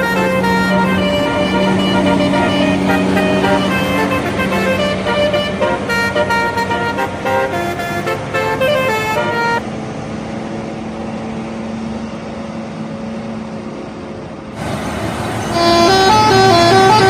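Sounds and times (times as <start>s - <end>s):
bus melody horn: 0.0s - 9.7s, 15.4s - 17.0s
engine hum: 0.0s - 17.0s
road noise: 0.0s - 17.0s.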